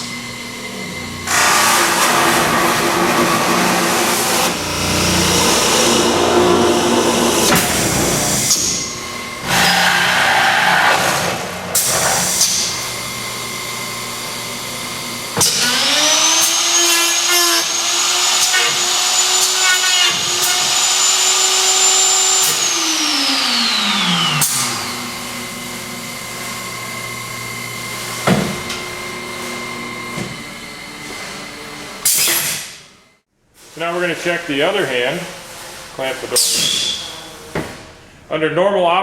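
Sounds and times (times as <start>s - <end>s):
cutter motor whine: 0.0s - 31.6s
machine hum: 0.0s - 32.0s.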